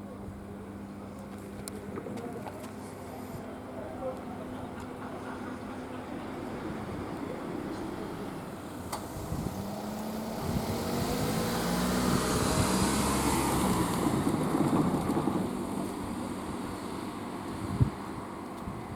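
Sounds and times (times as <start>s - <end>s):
vehicle passing: 6.3s - 17.8s.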